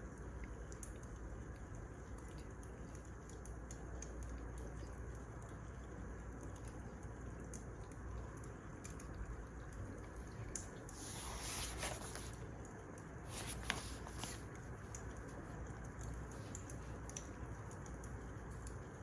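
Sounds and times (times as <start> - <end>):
soft hissing rush: 10.3 - 12.4, 13.2 - 14.6.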